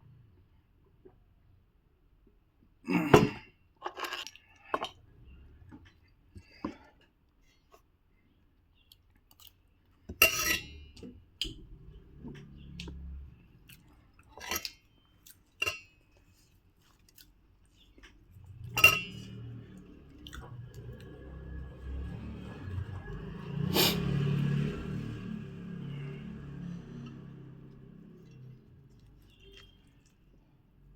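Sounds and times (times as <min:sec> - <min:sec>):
close chewing: 0:16.2 - 0:18.3, 0:26.9 - 0:30.4
clinks of dishes or cutlery: 0:18.7 - 0:19.4.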